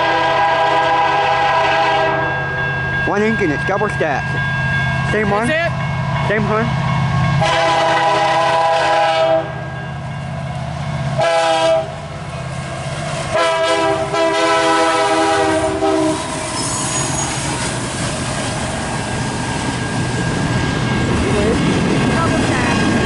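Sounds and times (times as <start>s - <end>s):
locomotive air horn blasts: 0.0s - 2.4s, 7.4s - 9.6s, 11.2s - 12.0s, 13.3s - 17.2s
low locomotive rumble: 0.0s - 23.0s
train cars clattering past: 0.0s - 23.0s.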